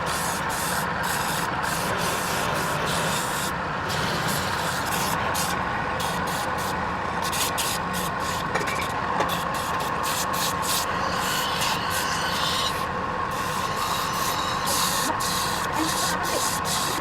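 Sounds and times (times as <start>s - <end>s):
hiss of wood being cut: 0.0s - 8.5s, 9.2s - 17.0s
wood lathe running: 10.2s - 17.0s.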